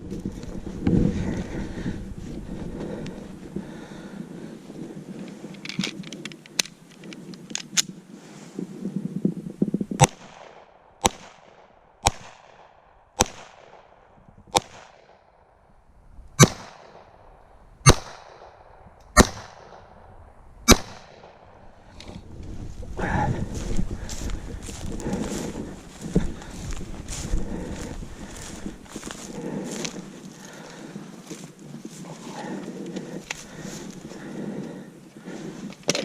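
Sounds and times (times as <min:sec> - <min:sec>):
pistol shots with echo: 0:17.9 - 0:18.6, 0:19.2 - 0:19.8, 0:20.7 - 0:21.4
low rumble: 0:21.4 - 0:30.2.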